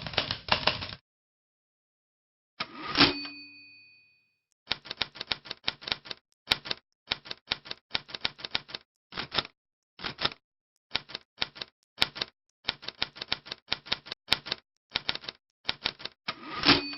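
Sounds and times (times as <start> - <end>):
typewriter key strikes: 0.0 - 1.0, 4.7 - 10.4, 11.0 - 16.9.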